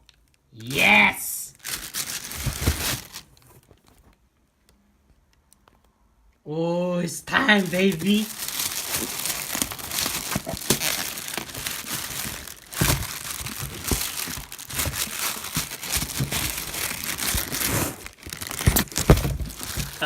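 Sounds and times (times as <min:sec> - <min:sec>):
packing paper crumpling and tearing: 0:01.5 - 0:03.9, 0:07.4 - 0:20.0.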